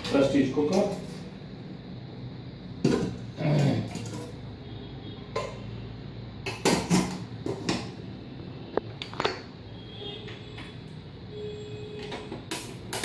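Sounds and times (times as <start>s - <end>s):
metal vessels knocking and clattering: 2.8s - 4.4s, 5.3s - 5.7s, 6.4s - 8.0s, 12.0s - 13.0s.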